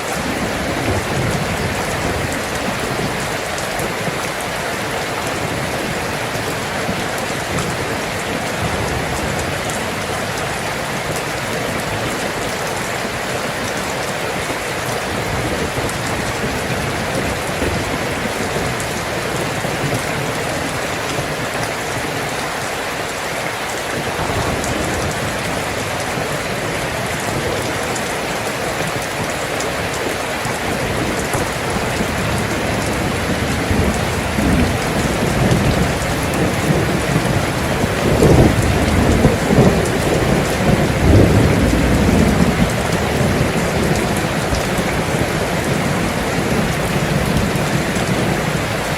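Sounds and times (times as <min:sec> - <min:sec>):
heavy rainfall: 0:00.0 - 0:48.9
thunder rumble: 0:15.1 - 0:21.5, 0:23.9 - 0:29.4, 0:30.0 - 0:48.9.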